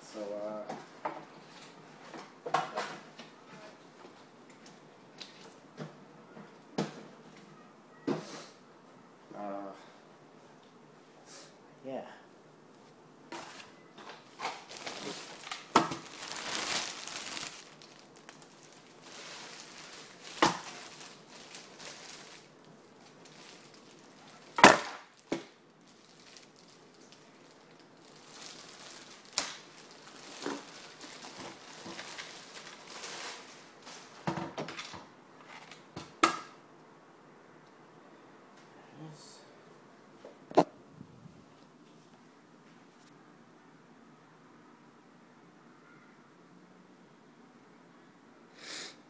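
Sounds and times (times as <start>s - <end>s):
packaging rustling and crumpling: 13.4s - 34.2s.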